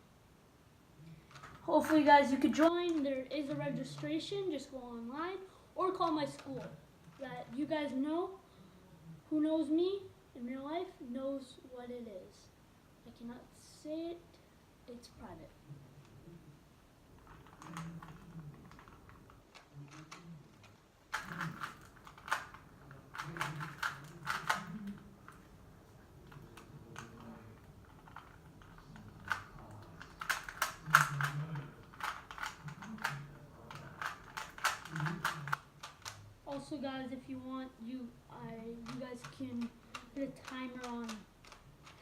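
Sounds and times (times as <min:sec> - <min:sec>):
puzzle cube clicking: 0:01.2 - 0:03.6, 0:17.2 - 0:25.5, 0:26.2 - 0:36.8, 0:38.3 - 0:42.0.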